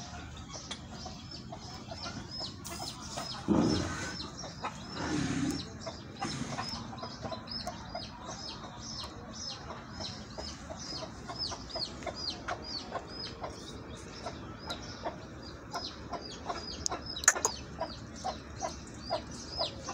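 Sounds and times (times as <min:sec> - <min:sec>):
birds chirping: 0:00.0 - 0:19.9
sharp click: 0:16.8 - 0:17.6.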